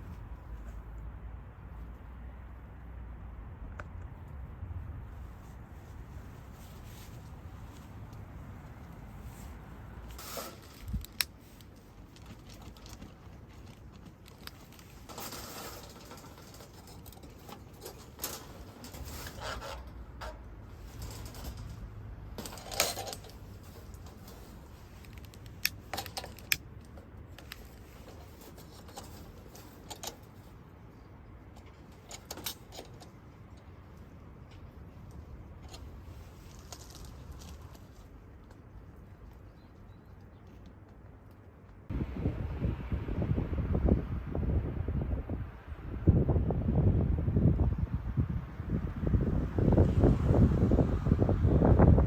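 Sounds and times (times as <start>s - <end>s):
faint low rumble: 0.0s - 52.0s
rustling: 5.1s - 39.6s.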